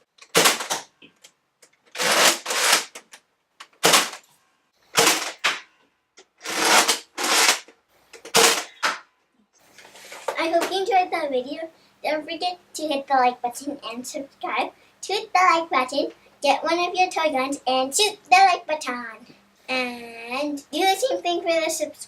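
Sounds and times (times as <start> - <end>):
toy blaster firing: 0.3 - 0.9, 2.0 - 3.0, 3.8 - 4.2, 4.9 - 5.6, 6.4 - 7.7, 8.3 - 9.0.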